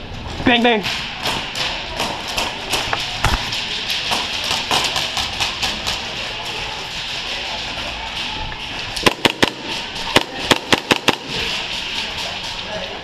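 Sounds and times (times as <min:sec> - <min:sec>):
airsoft guns firing: 0:00.8 - 0:06.1, 0:09.0 - 0:12.0.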